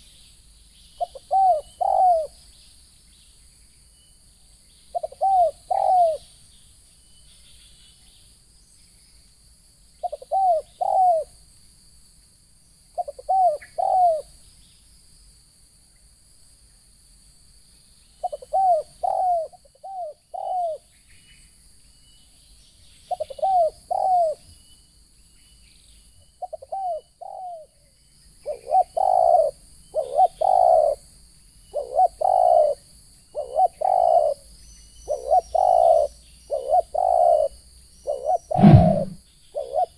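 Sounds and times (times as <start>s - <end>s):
dove cooing: 1.0s - 2.4s, 5.0s - 6.3s, 10.0s - 11.3s, 13.0s - 14.3s, 18.2s - 20.8s, 23.1s - 24.4s, 26.4s - 27.7s, 28.4s - 31.0s, 31.8s - 32.8s, 33.4s - 34.4s, 35.1s - 39.9s.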